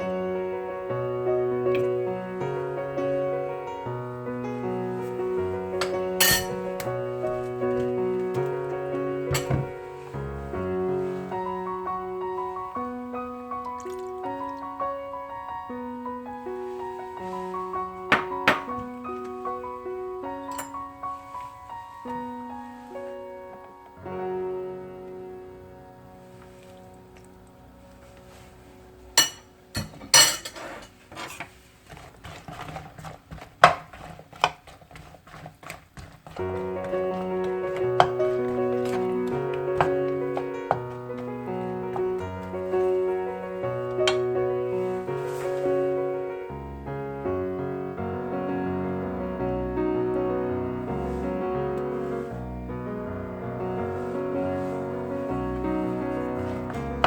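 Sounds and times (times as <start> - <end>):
instrumental piano music: 0.0 - 34.5, 36.0 - 57.0
utensils clanking on cookware: 5.8 - 6.6, 29.2 - 36.4.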